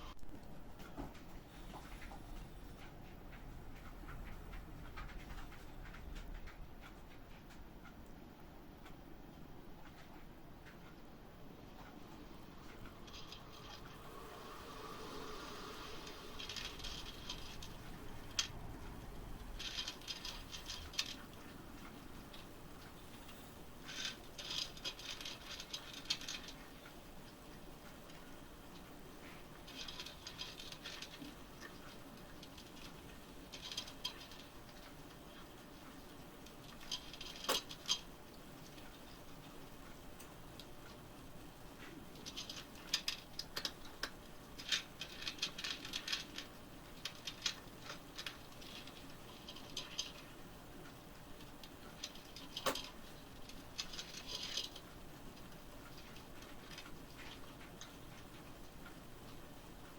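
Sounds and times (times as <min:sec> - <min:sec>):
cat crunching dry kibble: 0:11.8 - 0:39.6, 0:41.8 - 0:59.4.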